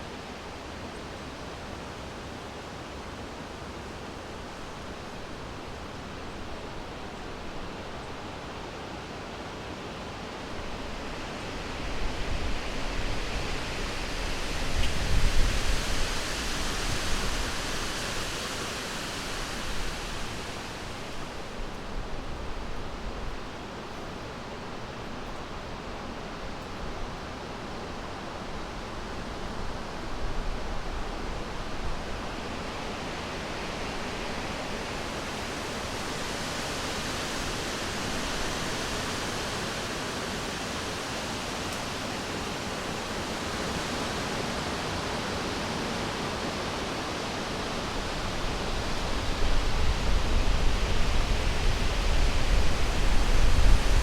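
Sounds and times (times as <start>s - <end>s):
wind blowing through forest: 0.0s - 54.0s.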